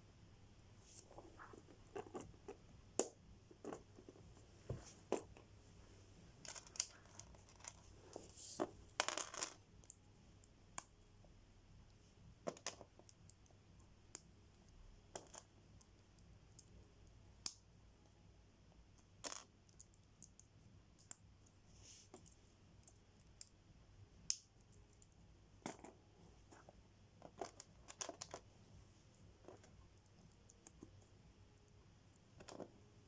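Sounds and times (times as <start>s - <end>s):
plastic pieces clicking: 6.4s - 7.8s.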